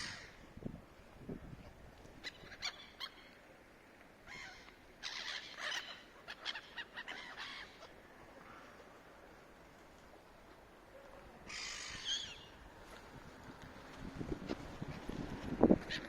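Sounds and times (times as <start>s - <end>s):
gulls calling: 4.2s - 9.0s, 11.4s - 12.7s.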